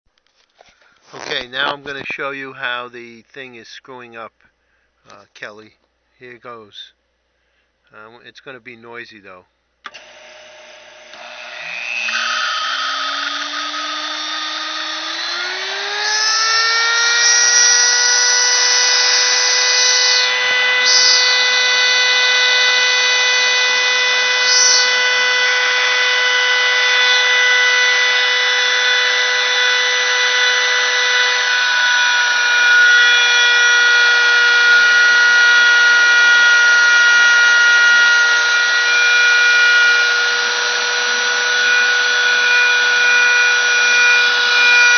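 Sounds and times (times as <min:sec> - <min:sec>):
spindle motor whine: 0:09.8 - 0:44.9.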